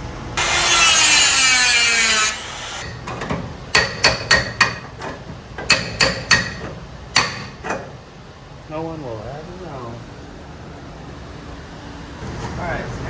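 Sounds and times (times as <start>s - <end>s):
power tool spinning down: 0.4s - 2.8s.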